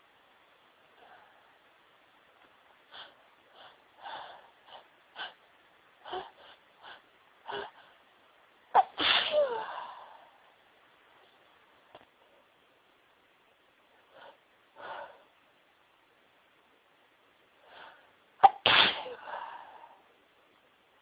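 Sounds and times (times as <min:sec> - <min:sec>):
woman sneezing loudly: 0:08.8 - 0:09.9, 0:18.4 - 0:19.4.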